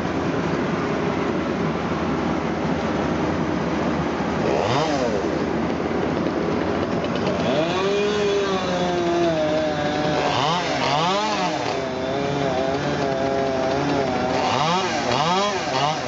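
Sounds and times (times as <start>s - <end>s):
chainsaw engine revving: 4.4s - 5.6s, 6.8s - 16.0s.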